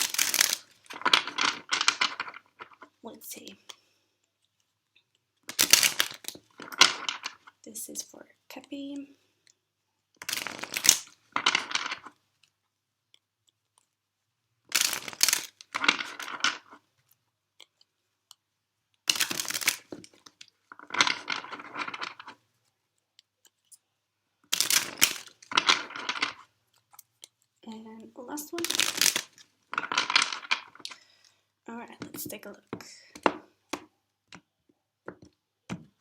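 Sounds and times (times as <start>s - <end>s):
cards being shuffled: 0.0s - 2.9s, 5.4s - 7.6s, 10.2s - 12.1s, 14.7s - 16.8s, 19.1s - 22.4s, 24.5s - 26.4s, 28.6s - 30.9s.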